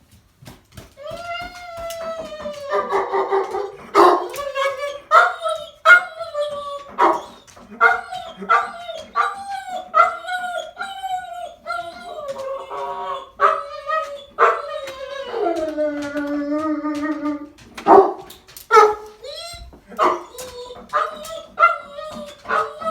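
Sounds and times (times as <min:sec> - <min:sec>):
dog yelping and howling: 0:01.0 - 0:22.9.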